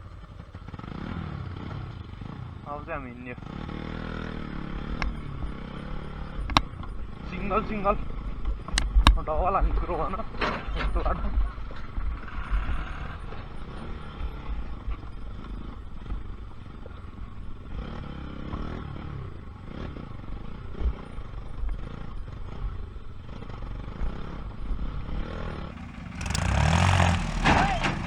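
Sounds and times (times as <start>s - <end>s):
motorcycle engine rumbling: 25.4s - 28.0s.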